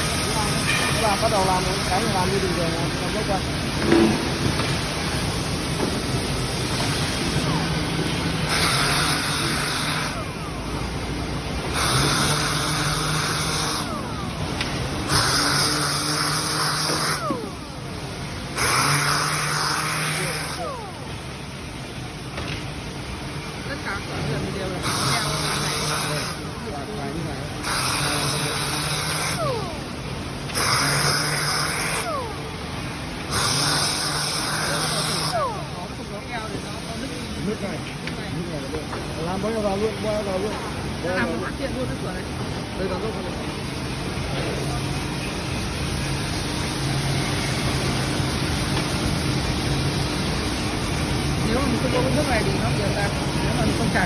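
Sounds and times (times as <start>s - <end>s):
wood sanding machine humming: 0.0s - 21.5s, 23.7s - 37.6s
harsh sanding hiss: 11.7s - 14.4s, 15.0s - 17.3s, 18.6s - 20.7s, 27.6s - 32.2s, 32.9s - 35.4s.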